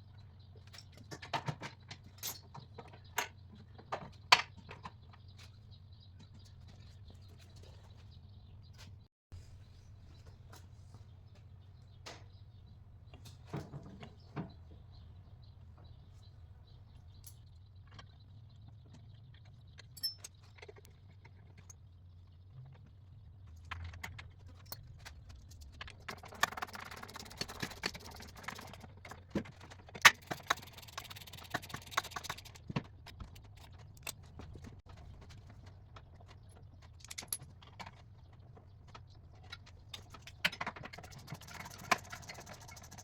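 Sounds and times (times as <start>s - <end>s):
tools clicking and tapping: 19.4s - 21.8s, 23.5s - 34.8s.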